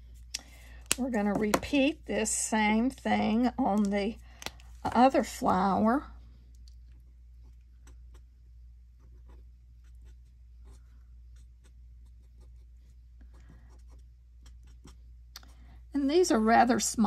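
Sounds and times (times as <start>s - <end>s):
steady low hum: 0.0s - 17.0s
marker scratching on card: 9.0s - 15.0s.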